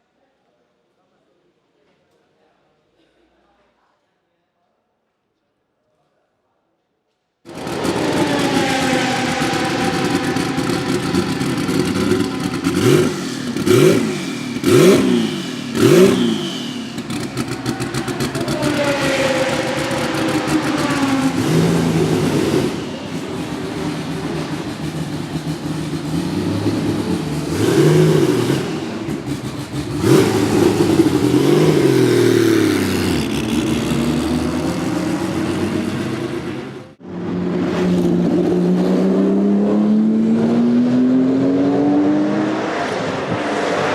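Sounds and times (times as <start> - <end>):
loud exhaust bangs: 7.5 - 40.8
race car engine revving: 7.5 - 43.9.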